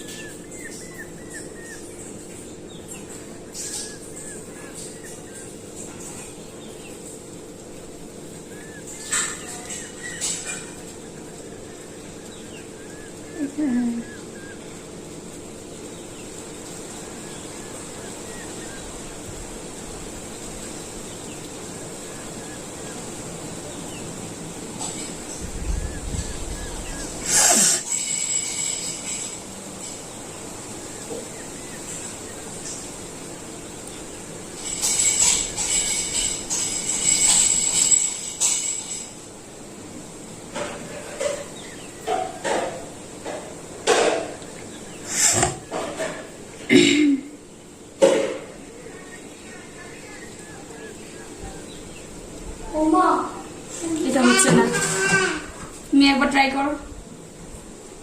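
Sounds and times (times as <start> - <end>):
faint bird chirps: 0.0 - 7.1, 48.6 - 52.8
steady background hum: 0.0 - 58.0.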